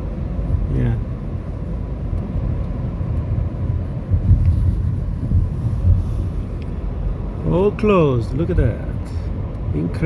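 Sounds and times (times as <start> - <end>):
car engine and road noise: 0.0 - 10.0.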